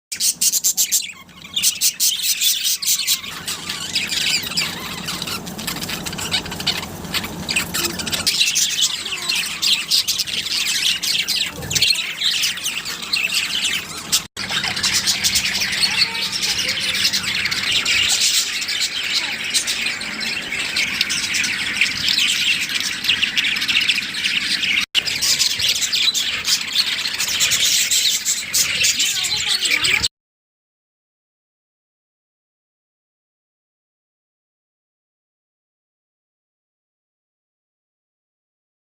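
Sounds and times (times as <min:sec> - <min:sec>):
budgerigars chirping and squawking: 0:00.1 - 0:30.1.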